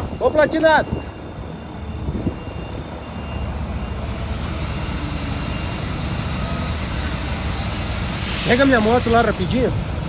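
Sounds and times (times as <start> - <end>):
diesel truck rumble: 2.4 - 10.0.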